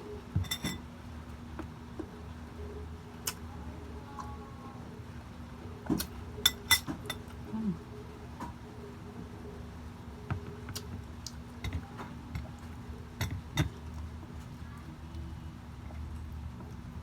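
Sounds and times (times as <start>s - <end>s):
faint steady hum: 0.0s - 17.0s
cutlery and dishes clinking: 0.4s - 0.8s, 6.5s - 7.3s.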